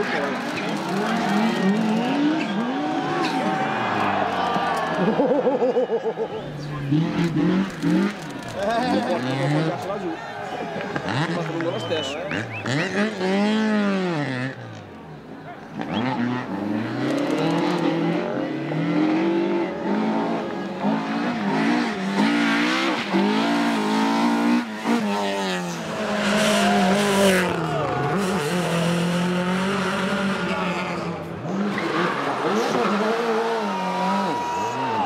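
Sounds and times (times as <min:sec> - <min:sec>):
rally car engine revving: 0:00.0 - 0:05.6, 0:06.3 - 0:10.0, 0:10.8 - 0:35.0.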